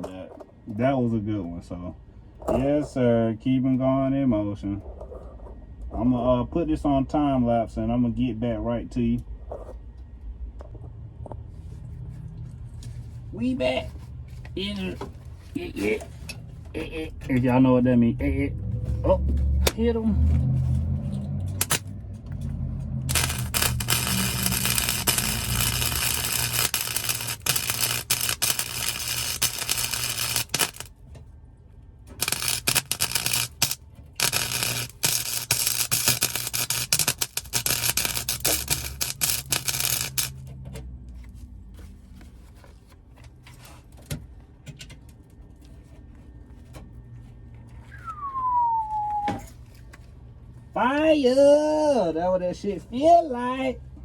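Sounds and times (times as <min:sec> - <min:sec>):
welder low hum: 0:21.4 - 0:30.9, 0:32.2 - 0:40.4
welding arc crackling: 0:21.5 - 0:30.9, 0:32.2 - 0:40.5.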